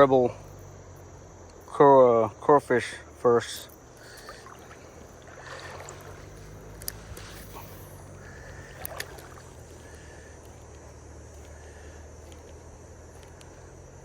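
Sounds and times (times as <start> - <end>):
riverside background hum: 0.0 - 14.0
light clicks: 6.7 - 7.8, 12.2 - 13.6.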